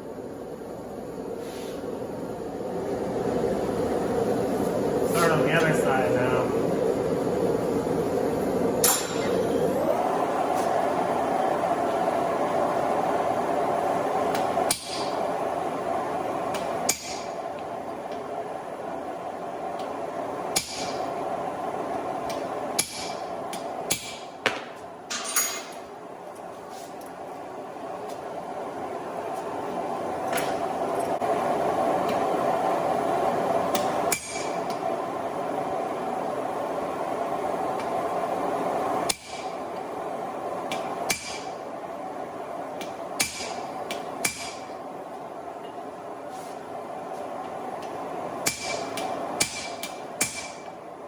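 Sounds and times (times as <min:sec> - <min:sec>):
hammer striking steel on anvil: 0:14.7 - 0:15.2, 0:16.5 - 0:17.3, 0:20.5 - 0:21.0, 0:22.3 - 0:25.8, 0:33.8 - 0:34.6, 0:39.1 - 0:39.5, 0:40.7 - 0:41.5, 0:42.8 - 0:44.7, 0:48.4 - 0:50.7.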